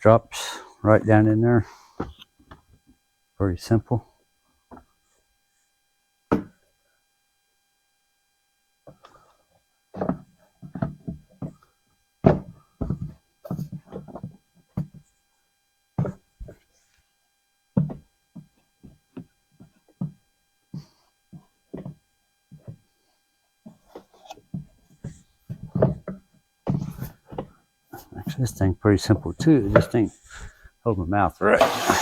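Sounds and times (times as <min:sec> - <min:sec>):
plastic knocks and thunks: 0:06.3 - 0:06.6, 0:12.2 - 0:15.0, 0:17.8 - 0:18.5, 0:25.5 - 0:27.5.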